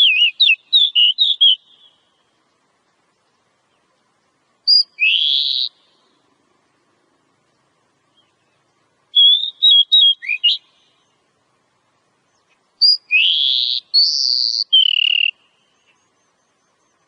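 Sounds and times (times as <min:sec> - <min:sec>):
songbird whistling: 0:00.0 - 0:02.1, 0:04.7 - 0:06.1, 0:09.1 - 0:11.2, 0:12.4 - 0:17.0.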